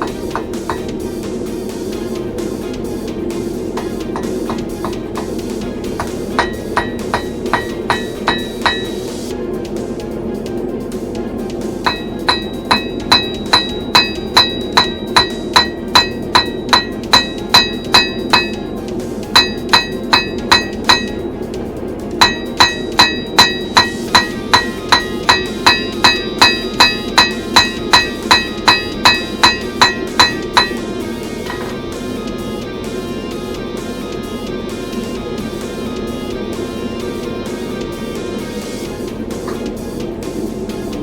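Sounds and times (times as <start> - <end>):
hammer striking steel on anvil: 0.0 - 1.2, 3.6 - 9.3, 11.8 - 21.4, 22.1 - 32.0, 39.2 - 41.0.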